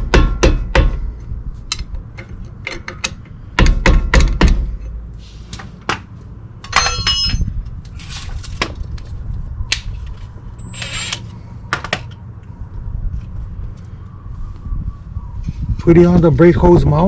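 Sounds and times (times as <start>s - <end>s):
metal tools knocking and tapping: 6.6s - 7.5s
ringing metallic clink: 6.7s - 7.5s
rustling scrapes: 8.0s - 8.6s.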